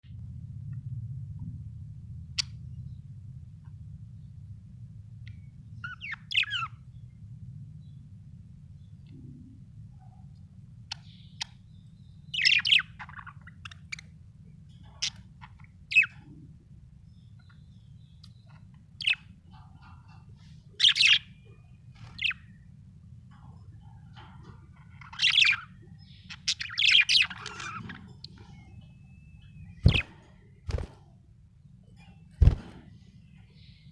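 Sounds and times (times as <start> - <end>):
faint low hum: 0.0 - 33.9
budgerigar chirping: 5.8 - 6.8, 10.9 - 14.1, 14.9 - 16.2, 17.1 - 20.2, 20.8 - 22.5, 24.9 - 30.2.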